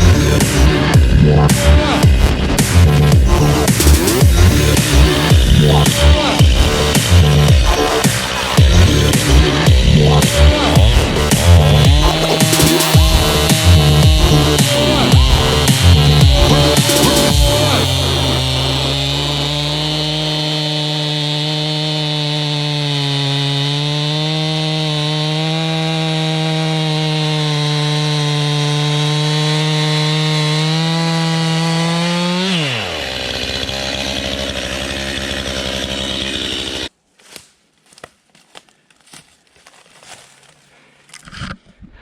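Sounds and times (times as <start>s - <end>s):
chainsaw running: 0.0s - 36.9s.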